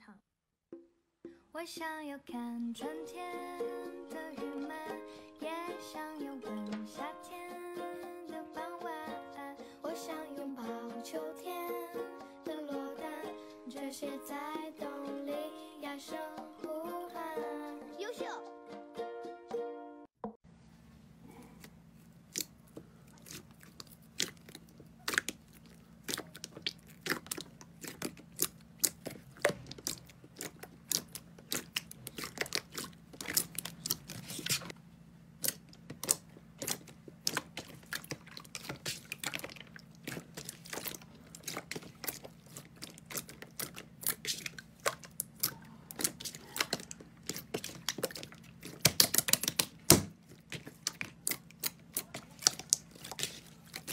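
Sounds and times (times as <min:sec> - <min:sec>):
low steady hum: 0:20.5 - 0:53.9
crunchy slime crackling and popping: 0:21.6 - 0:34.8, 0:35.4 - 0:53.9.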